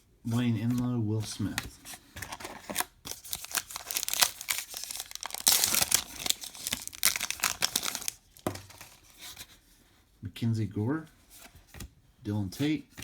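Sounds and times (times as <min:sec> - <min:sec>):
card pack wrapper tearing: 0:02.3 - 0:09.0.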